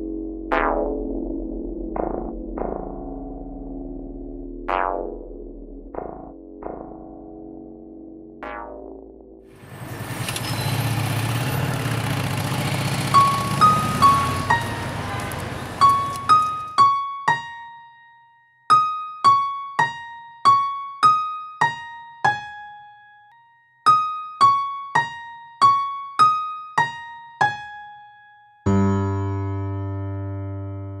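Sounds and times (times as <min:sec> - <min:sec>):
slow electric piano melody: 0:15.8 - 0:23.2, 0:23.9 - 0:31.0.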